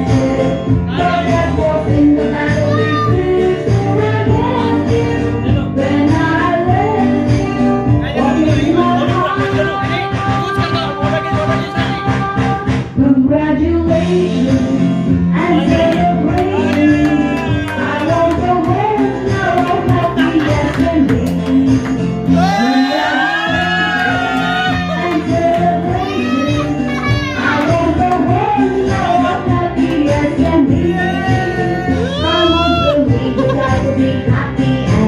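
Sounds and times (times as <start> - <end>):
instrumental backing music: 0.0 - 35.0
person singing wavering melody: 24.6 - 33.8.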